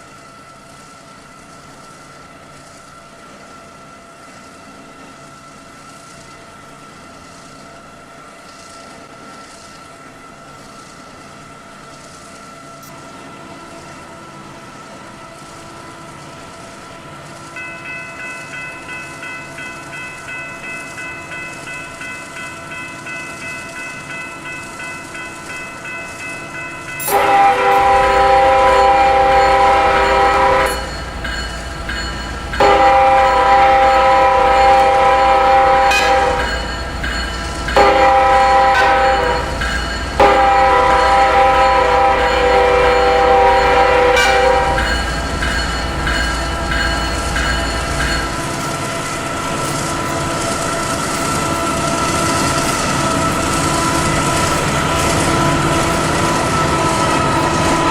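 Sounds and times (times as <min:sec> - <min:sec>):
diesel freight train humming: 0:00.0 - 0:57.9
bell ringing rhythmically: 0:17.6 - 0:48.8
train air horn blasts: 0:27.0 - 0:31.0, 0:32.6 - 0:36.7, 0:37.7 - 0:45.1.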